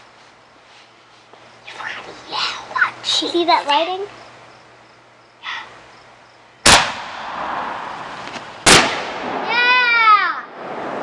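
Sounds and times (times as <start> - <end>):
firework bang with echo: 6.6 - 8.0, 8.6 - 9.6.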